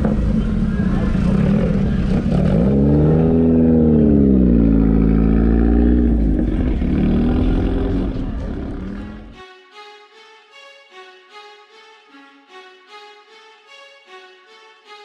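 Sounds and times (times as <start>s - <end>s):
car engine running: 0.0s - 9.4s.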